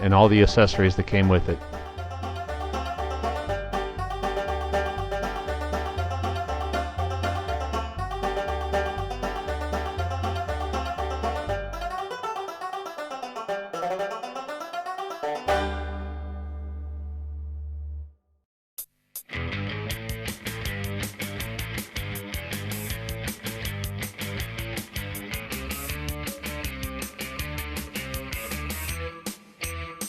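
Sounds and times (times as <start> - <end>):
alternating bass line: 0.0 - 12.0, 15.5 - 18.0
plucked-string tune: 0.0 - 18.0.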